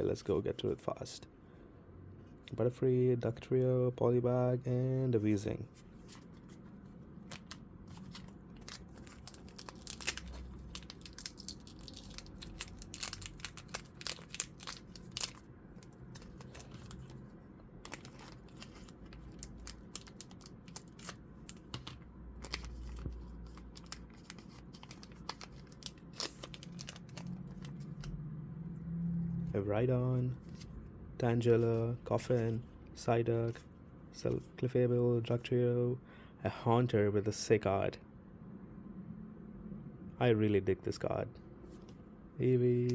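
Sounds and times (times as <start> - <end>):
cards being handled: 5.7 - 28.2
foil wrapper crinkling and tearing: 7.4 - 17.2, 17.8 - 28.2.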